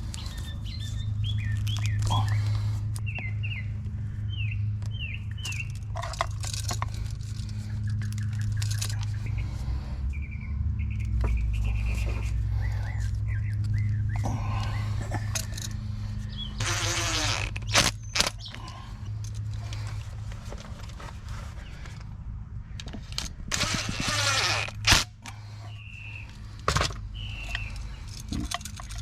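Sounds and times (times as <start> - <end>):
steady low hum: 0.0 - 29.0
hand tools scraping wires: 14.3 - 22.0, 22.9 - 29.0.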